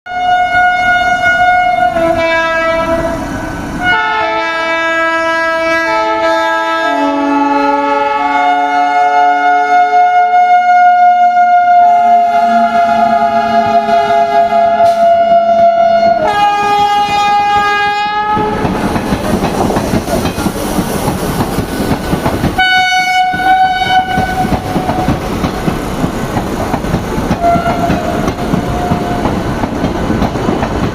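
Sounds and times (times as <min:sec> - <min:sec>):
train horn blasts: 0:00.1 - 0:18.6, 0:22.6 - 0:25.1, 0:27.4 - 0:29.4
train rumble: 0:12.1 - 0:30.9.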